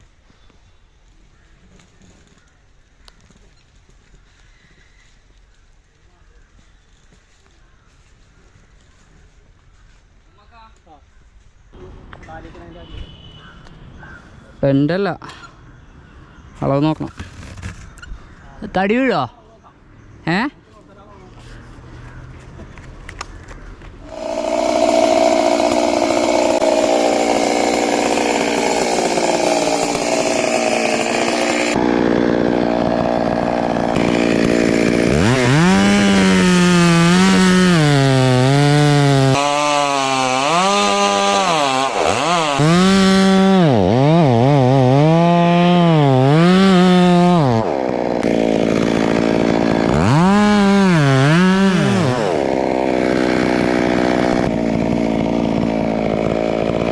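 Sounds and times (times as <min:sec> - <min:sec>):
chainsaw revving: 0:24.0 - 0:56.9.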